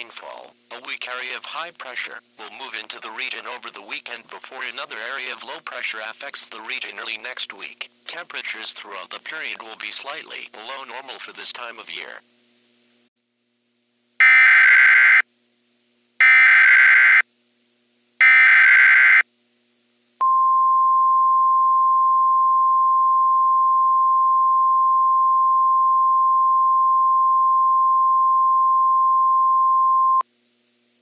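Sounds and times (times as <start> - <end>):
steady warning alarm tone: 14.2 - 15.2, 16.2 - 17.2, 18.2 - 19.2.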